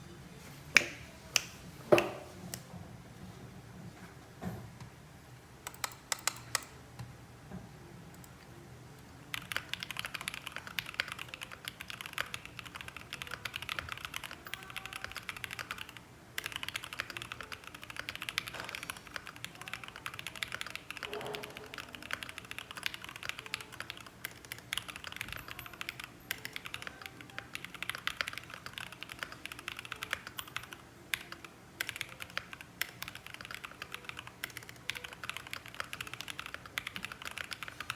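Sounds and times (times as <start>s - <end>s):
mechanical keyboard typing: 5.6s - 6.8s, 9.3s - 37.9s.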